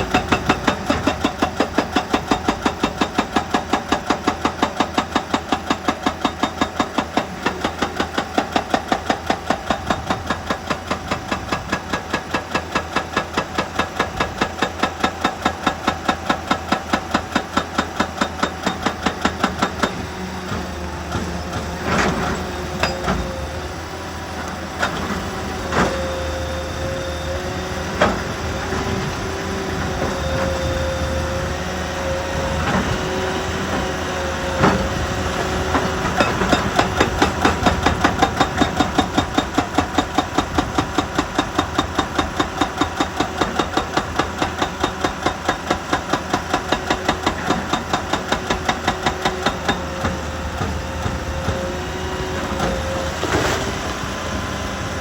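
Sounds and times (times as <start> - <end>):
heavy machinery whining: 15.8 - 55.0.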